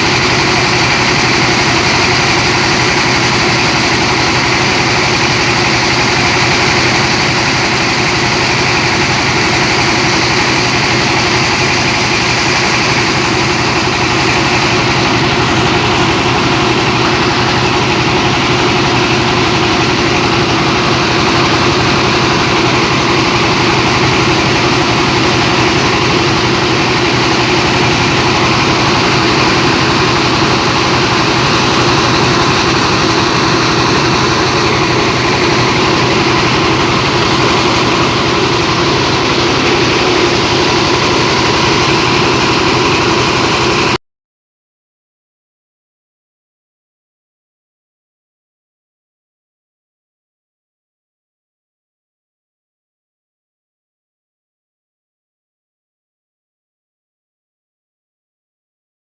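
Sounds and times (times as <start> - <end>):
diesel engine running: 0.0 - 44.0
whir of rice mill: 0.0 - 44.0.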